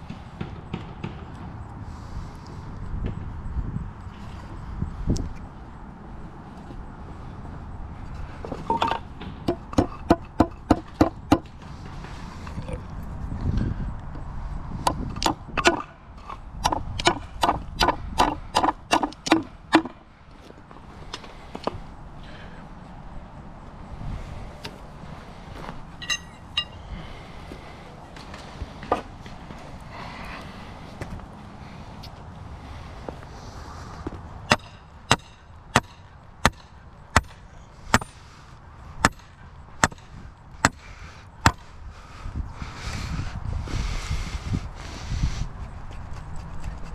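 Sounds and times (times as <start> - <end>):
hammer striking metal: 26.0 - 26.8, 34.5 - 38.2, 39.0 - 40.8.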